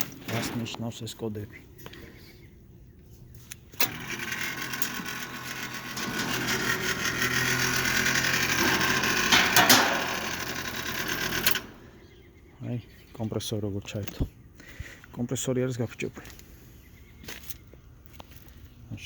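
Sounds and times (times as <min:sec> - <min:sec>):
heat pump compressor running roughly: 0:03.8 - 0:12.0.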